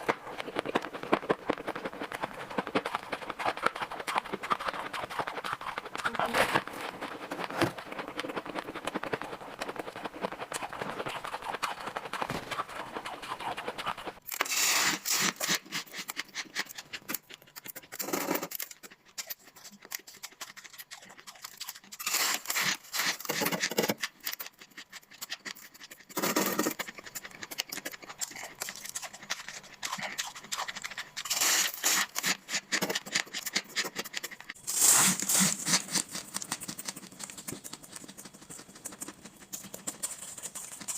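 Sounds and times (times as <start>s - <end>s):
shaved ice crunching: 22.0s - 23.5s, 31.2s - 32.6s, 34.6s - 36.6s.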